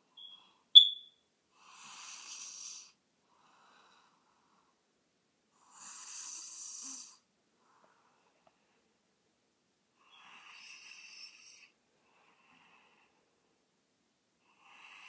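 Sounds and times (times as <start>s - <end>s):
sharp high whistle: 0.2s - 1.2s
snoring hissy breaths: 1.8s - 3.0s, 5.7s - 7.2s.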